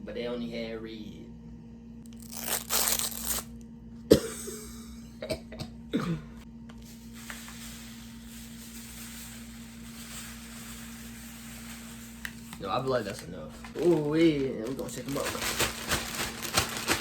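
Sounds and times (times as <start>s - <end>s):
steady low hum: 0.0s - 17.0s
person coughing: 4.1s - 6.4s.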